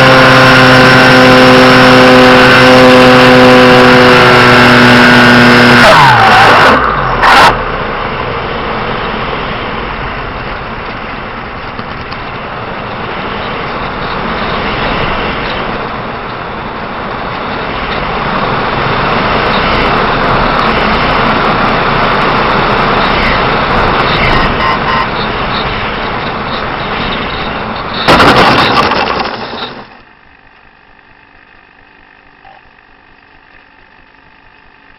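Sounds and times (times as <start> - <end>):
electric motor whine: 0.0 - 7.0
steady rushing noise: 3.7 - 31.2
loud burst: 28.0 - 30.0.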